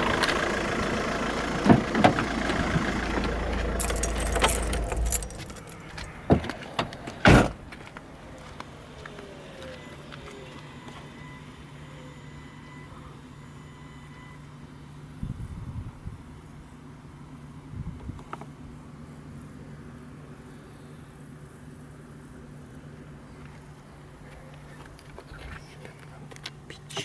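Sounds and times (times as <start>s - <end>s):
diesel engine idling: 0.0s - 17.7s.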